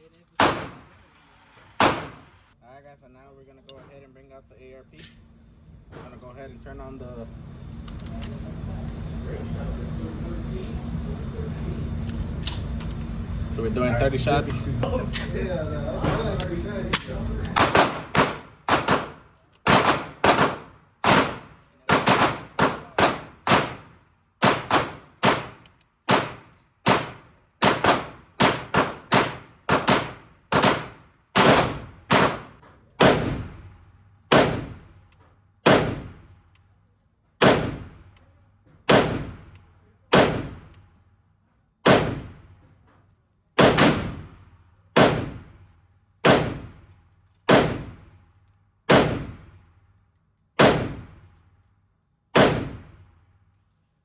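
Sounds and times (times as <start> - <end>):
pistol shots echoing: 0.4 - 0.9, 1.8 - 2.3, 17.6 - 33.6, 34.3 - 34.8, 35.6 - 36.2, 37.4 - 38.0, 38.9 - 39.5, 40.1 - 40.7, 41.8 - 42.4, 43.6 - 44.3, 45.0 - 45.5, 46.2 - 46.8, 47.5 - 48.0, 48.9 - 49.5, 50.6 - 51.2, 52.4 - 53.0.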